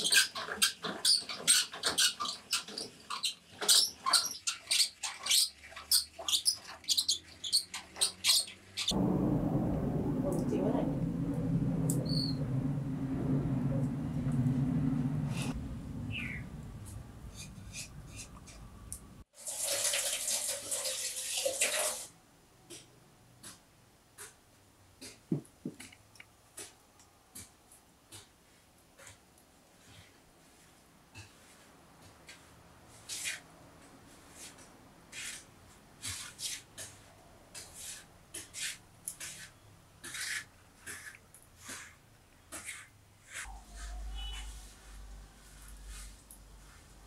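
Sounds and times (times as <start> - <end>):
low rumble with faint ticks: 8.9 - 17.1
water pouring: 19.3 - 22.1
rasping scraping strokes: 34.2 - 47.0.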